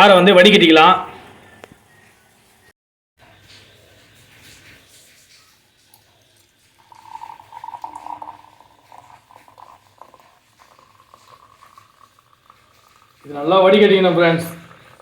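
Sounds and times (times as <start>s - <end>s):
liquid splashing and trickling: 3.2s - 15.0s.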